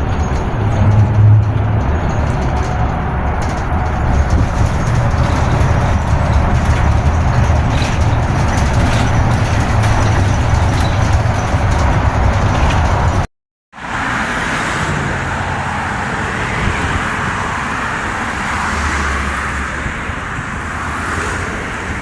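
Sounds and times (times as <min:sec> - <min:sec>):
road noise: 0:00.0 - 0:22.0
vehicle rumble: 0:00.0 - 0:22.0.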